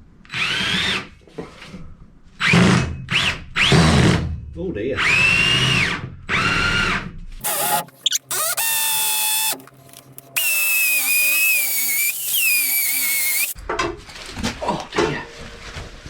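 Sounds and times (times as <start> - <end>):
power drill: 0.3 - 1.1, 5.0 - 9.7, 10.3 - 13.6.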